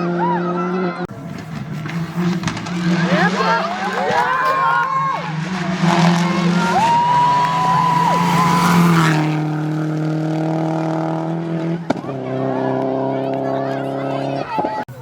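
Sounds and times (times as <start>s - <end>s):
car engine running hard: 0.0s - 15.0s
tyres squealing: 0.4s - 10.0s.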